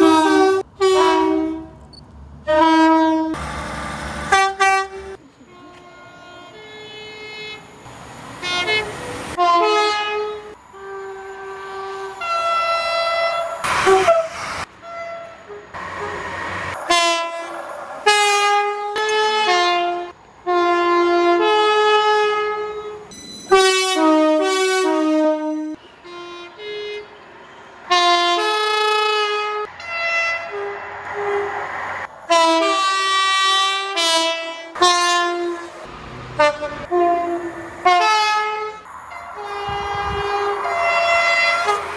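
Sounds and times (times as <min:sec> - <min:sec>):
two-tone train horn blasts: 0:00.0 - 0:01.8, 0:02.5 - 0:03.4, 0:04.2 - 0:07.8, 0:08.4 - 0:31.6, 0:32.3 - 0:41.9
train rushing by: 0:06.4 - 0:20.5, 0:29.7 - 0:41.9.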